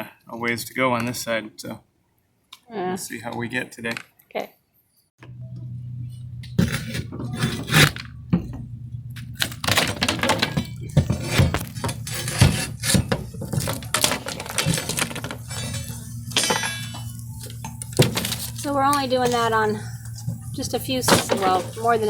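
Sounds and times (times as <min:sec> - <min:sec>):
steady low hum: 0:05.2 - 0:22.0
wood cracking and splintering: 0:09.2 - 0:19.6.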